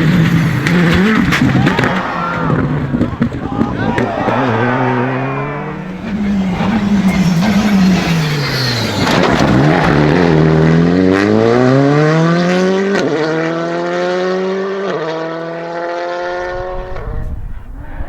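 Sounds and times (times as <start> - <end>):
gear upshifts: 0.0 - 11.7
rally car engine accelerating: 0.0 - 18.0.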